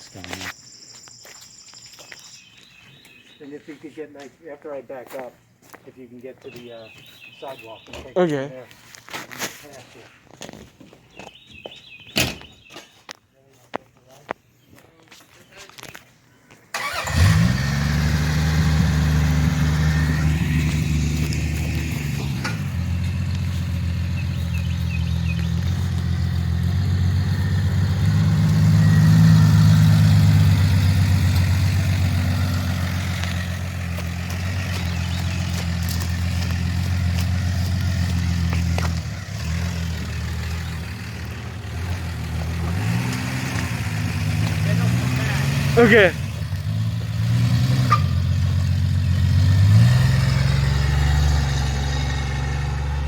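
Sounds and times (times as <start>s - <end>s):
car engine idling: 16.8s - 53.0s.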